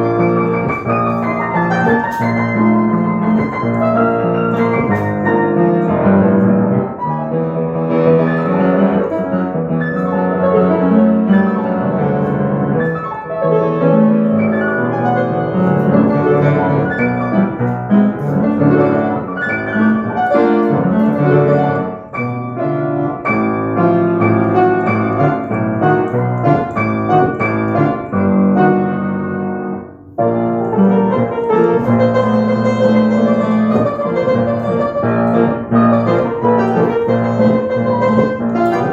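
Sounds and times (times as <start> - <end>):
piano music: 0.0 - 38.9.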